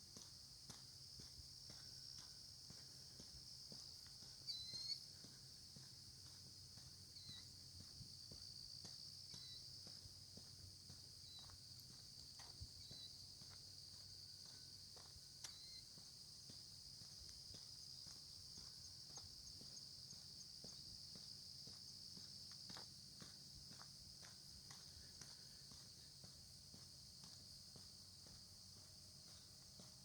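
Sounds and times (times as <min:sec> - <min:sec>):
crickets trilling: 0:04.5 - 0:05.2, 0:07.1 - 0:10.0, 0:11.2 - 0:22.9.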